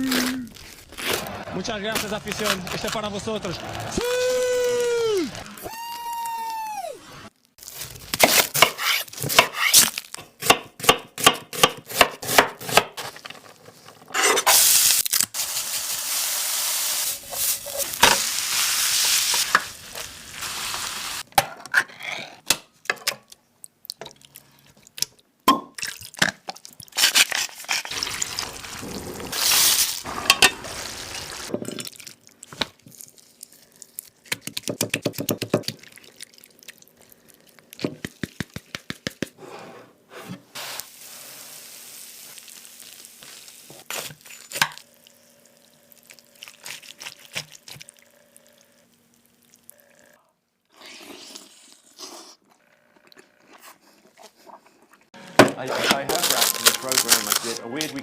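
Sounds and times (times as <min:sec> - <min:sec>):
food sizzling: 0:14.5 - 0:21.3, 0:27.8 - 0:32.0, 0:40.6 - 0:49.7.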